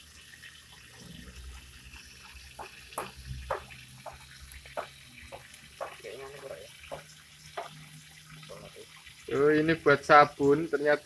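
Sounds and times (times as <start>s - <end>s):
faint steady background noise: 0.0s - 11.0s.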